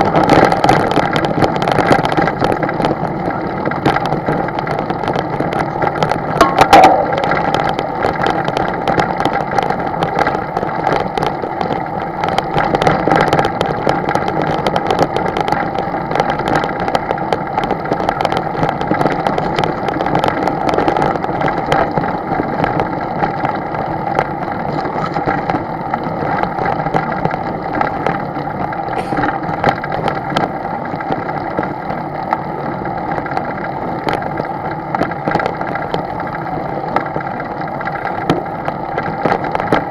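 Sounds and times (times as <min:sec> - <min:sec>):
crackles and knocks: 0:03.8 - 0:13.9
loud hit: 0:06.4 - 0:08.2.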